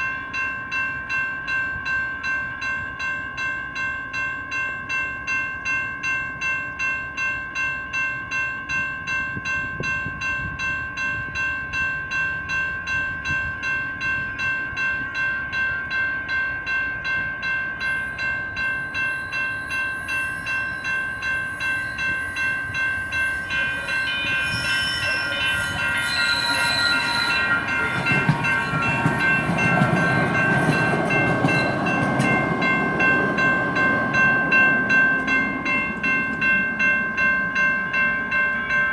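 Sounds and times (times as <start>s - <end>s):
railroad crossing bells ringing: 0.0s - 38.9s
train passing rumble: 9.4s - 38.9s.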